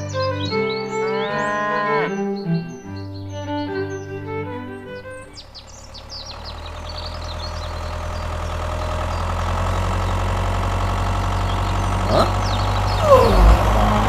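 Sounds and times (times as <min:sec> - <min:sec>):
birds chirping: 0:00.0 - 0:14.0
tractor engine running: 0:03.4 - 0:14.0.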